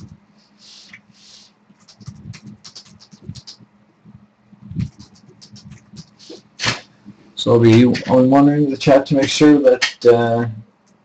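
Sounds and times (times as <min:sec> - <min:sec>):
short hissing sounds: 0:00.4 - 0:02.0, 0:06.0 - 0:06.9
typing on computer keyboard: 0:01.8 - 0:03.6, 0:04.8 - 0:06.2.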